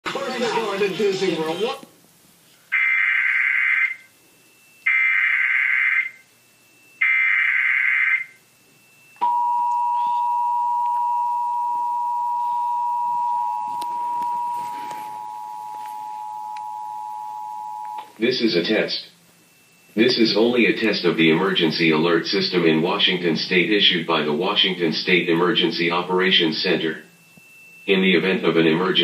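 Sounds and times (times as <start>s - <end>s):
two-tone attention signal: 8.0s - 22.2s
digital header data bursts: 18.2s - 29.0s.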